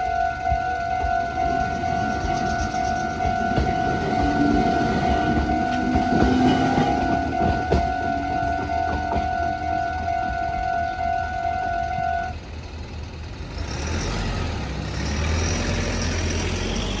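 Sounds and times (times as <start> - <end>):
level crossing warning bell: 0.0 - 12.7
road vehicle rumble: 0.0 - 17.0.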